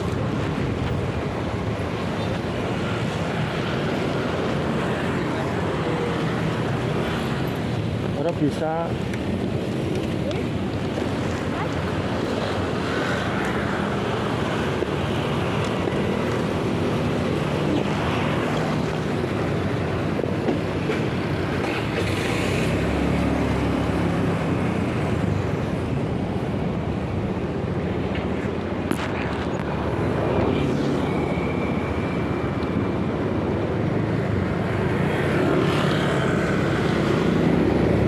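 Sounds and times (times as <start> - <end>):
traffic engines: 0.0 - 38.0.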